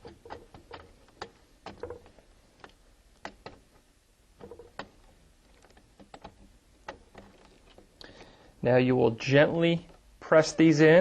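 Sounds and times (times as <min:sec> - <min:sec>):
cable connectors clicking and tapping: 0:00.0 - 0:03.8, 0:04.4 - 0:08.3.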